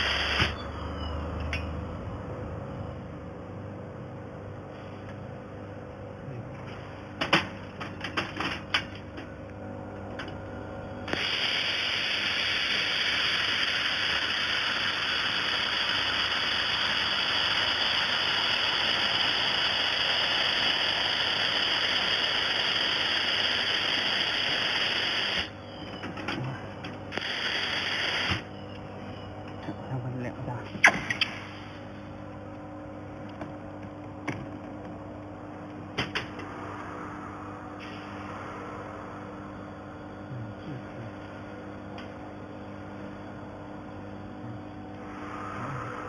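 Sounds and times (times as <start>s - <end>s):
laser welder hissing: 0.0s - 0.6s, 11.1s - 25.6s, 27.1s - 28.5s.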